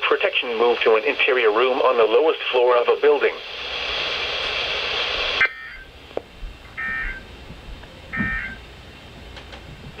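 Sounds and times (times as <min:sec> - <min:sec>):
digital tone bursts from radio speaker: 0:06.8 - 0:07.2, 0:08.1 - 0:08.6.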